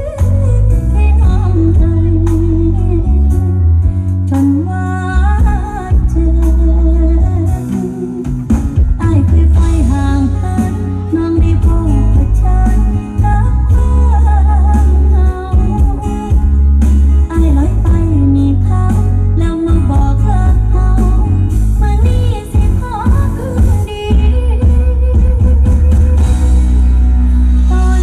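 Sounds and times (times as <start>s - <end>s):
song with singer and heavy bass: 0.0s - 28.0s.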